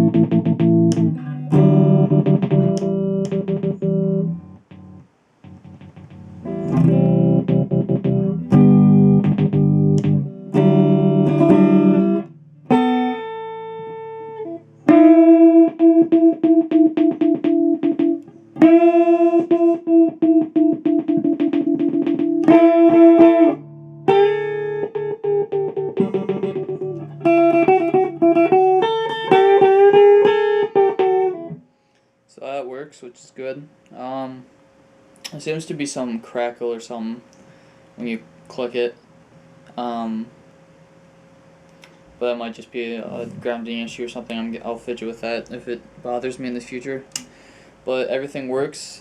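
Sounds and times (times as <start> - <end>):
electric guitar stuttering notes: 0.0 - 31.6.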